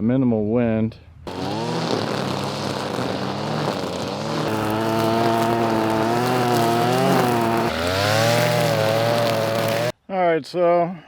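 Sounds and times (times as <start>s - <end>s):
string trimmer engine running: 1.3s - 9.9s.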